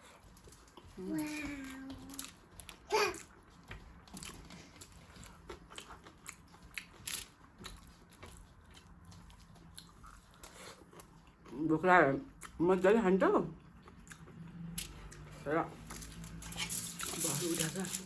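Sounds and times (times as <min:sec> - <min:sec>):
biting and chewing food: 0:00.0 - 0:11.6.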